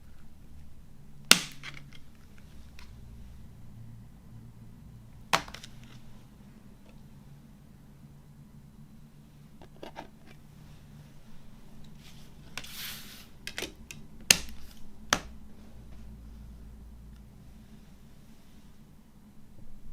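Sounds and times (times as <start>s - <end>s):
plastic case snaps: 5.4s - 6.0s
rustling slide: 9.8s - 13.4s.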